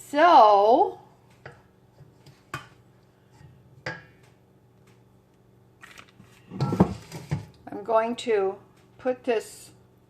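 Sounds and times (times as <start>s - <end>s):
kitchenware knocks and clicks: 6.5s - 7.6s.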